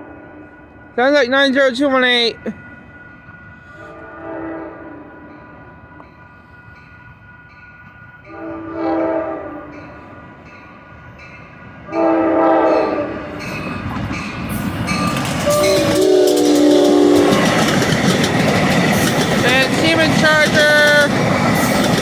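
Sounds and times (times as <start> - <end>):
train air horn blasts: 0.0 - 0.9, 3.6 - 5.5, 8.3 - 10.0, 11.9 - 13.4, 15.4 - 17.8
train wheel and rail clatter: 4.8 - 22.0.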